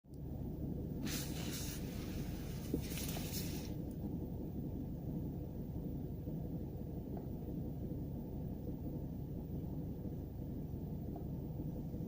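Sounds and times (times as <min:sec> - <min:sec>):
rising hiss: 0:01.0 - 0:03.8.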